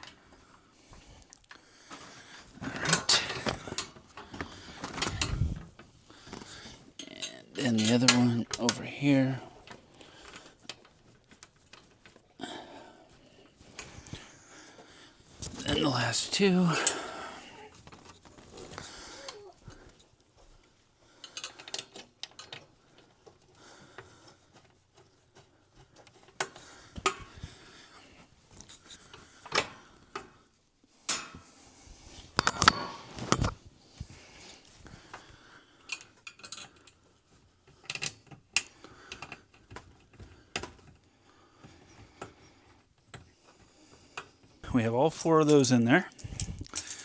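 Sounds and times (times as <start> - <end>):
metal hardware clicks and knocks: 32.4 - 33.6.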